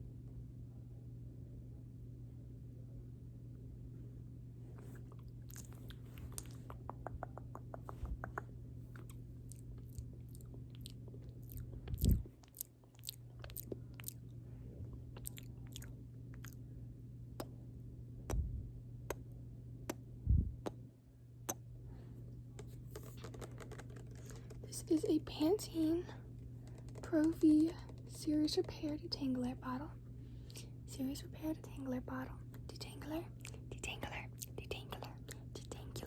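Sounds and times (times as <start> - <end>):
steady low hum: 0.0 - 36.0
wet lip smacks and clicks: 4.8 - 14.3, 15.1 - 16.6, 17.4 - 17.6, 19.1 - 20.8, 33.4 - 35.8
heavy low thumps: 11.7 - 12.3, 18.3 - 18.8, 20.2 - 20.7.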